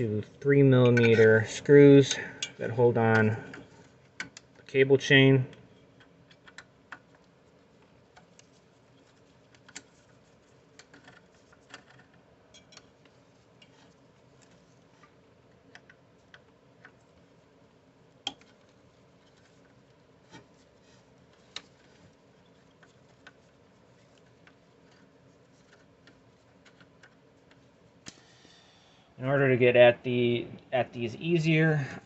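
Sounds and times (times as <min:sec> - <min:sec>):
small clicks of metal parts: 0:00.8 - 0:01.4, 0:02.1 - 0:04.7, 0:06.0 - 0:07.2, 0:10.8 - 0:13.0.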